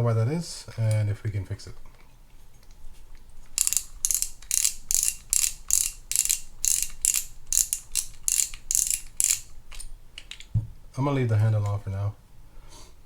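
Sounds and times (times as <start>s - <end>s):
fishing reel whirring: 3.6s - 9.4s.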